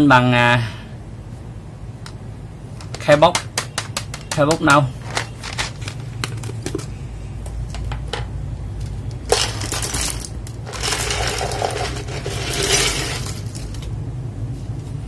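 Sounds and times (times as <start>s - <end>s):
keyboard switches clattering: 2.8s - 6.8s.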